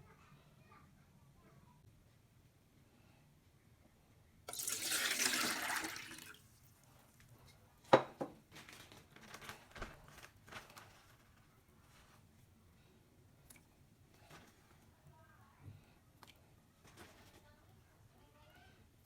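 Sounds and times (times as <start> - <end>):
water poured into a bowl: 4.5 - 6.6.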